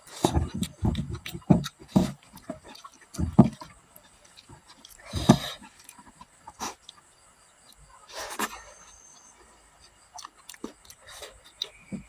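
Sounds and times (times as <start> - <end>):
person chewing with mouth smacks: 2.1 - 3.2, 4.2 - 7.0, 9.9 - 11.8.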